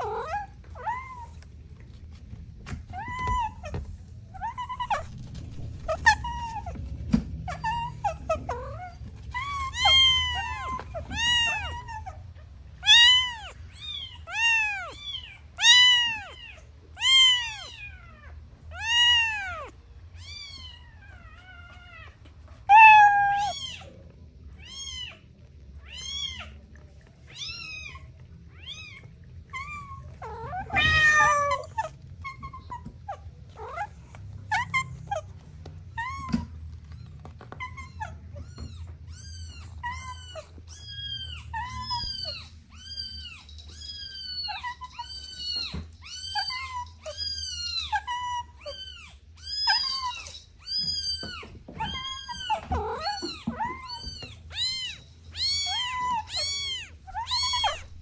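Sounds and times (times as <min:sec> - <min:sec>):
kitten meowing: 0:00.0 - 0:01.5, 0:02.7 - 0:06.8, 0:07.5 - 0:12.2, 0:12.8 - 0:22.1, 0:27.2 - 0:58.0
harsh loud cat cry: 0:29.6 - 0:31.9.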